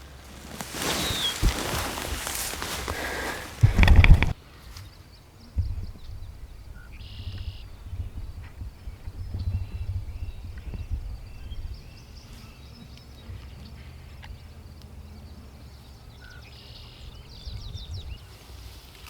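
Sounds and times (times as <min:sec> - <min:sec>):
low microphone rumble: 0:00.0 - 0:04.4, 0:05.5 - 0:12.5
songbirds chirping: 0:00.0 - 0:19.0.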